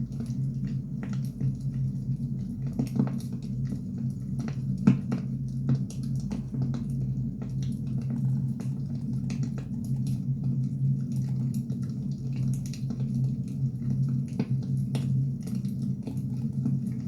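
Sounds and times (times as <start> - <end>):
low fire rumble: 0.0 - 17.0.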